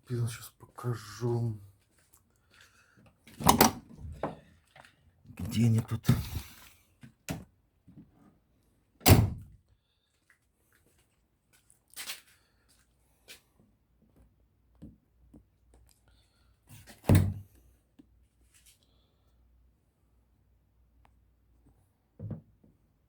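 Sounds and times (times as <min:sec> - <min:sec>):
objects thumping and knocking: 0:22.2 - 0:22.5.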